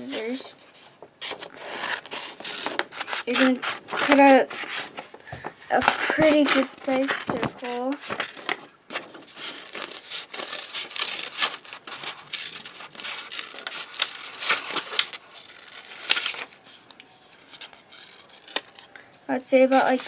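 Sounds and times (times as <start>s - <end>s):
scissors cutting paper: 0.0s - 0.4s, 1.2s - 4.9s, 5.7s - 8.6s, 9.4s - 16.4s, 17.6s - 18.8s, 19.5s - 20.0s
paper rustling: 0.0s - 18.9s.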